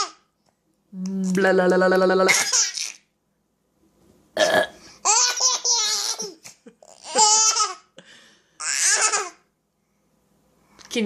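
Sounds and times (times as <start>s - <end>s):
baby laughing: 2.3s - 3.0s, 5.0s - 7.9s, 8.6s - 9.4s.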